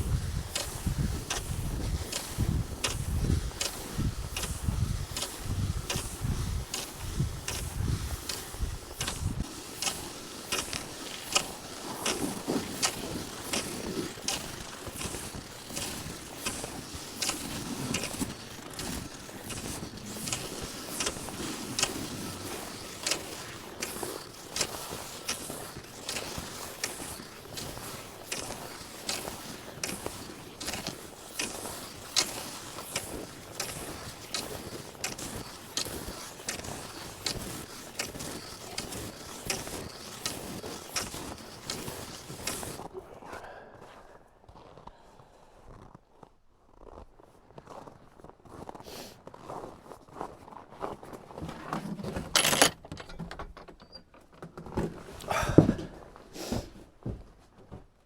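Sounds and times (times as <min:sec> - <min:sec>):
wind rumble on microphone: 0:00.0 - 0:09.5
skis swishing on snow: 0:00.0 - 0:42.9, 0:48.6 - 0:51.4, 0:55.2 - 0:57.0.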